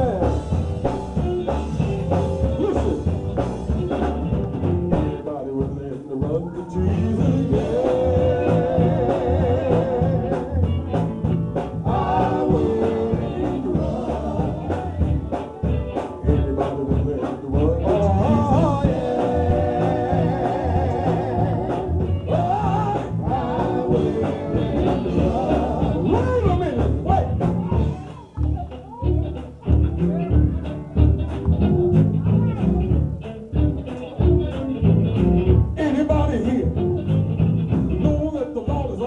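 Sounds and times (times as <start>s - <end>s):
bass: 0.0s - 39.0s
drum kit beat: 0.0s - 39.0s
organ or keyboard: 0.0s - 39.0s
person singing: 6.2s - 29.0s.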